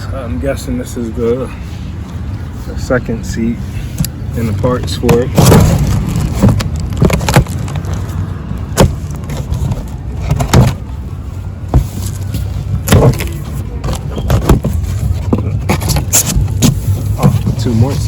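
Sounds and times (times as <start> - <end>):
steady low rumble: 0.0 - 18.0
knocks and rustles of handling: 3.9 - 18.0.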